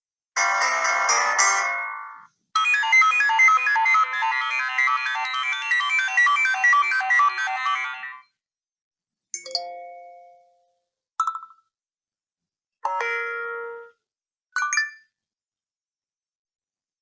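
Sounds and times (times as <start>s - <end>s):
phone ringtone melody: 0.4s - 8.3s.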